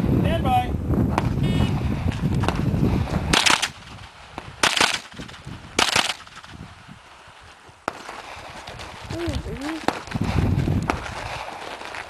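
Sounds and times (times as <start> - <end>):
rapid gunfire: 3.3 - 3.8, 4.6 - 6.6.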